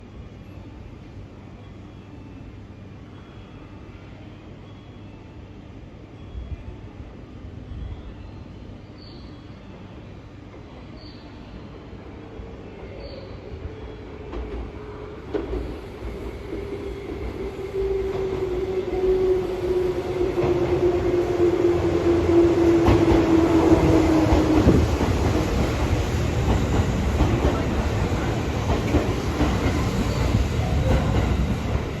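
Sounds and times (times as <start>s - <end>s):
train wheels rumbling on rails: 13.1s - 32.0s
train cars clattering by: 20.1s - 32.0s.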